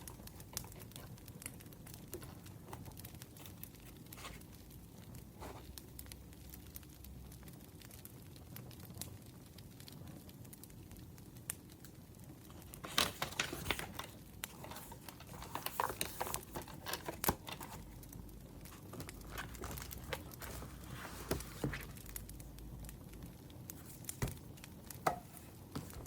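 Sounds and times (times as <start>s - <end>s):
packaging crinkling and rustling: 0.0s - 5.8s, 12.4s - 26.0s
packaging tearing: 12.7s - 22.3s.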